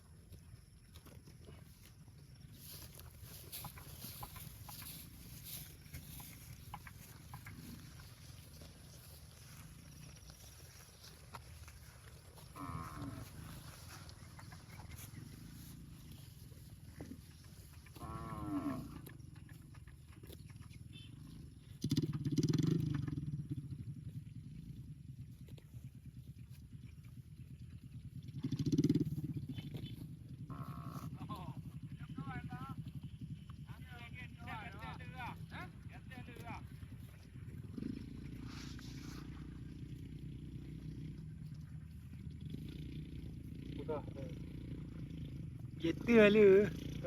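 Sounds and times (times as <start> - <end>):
steady low hum: 0.0 - 47.0
cows mooing: 2.6 - 19.9, 30.4 - 32.7
cow mooing: 12.3 - 19.4, 30.5 - 31.6.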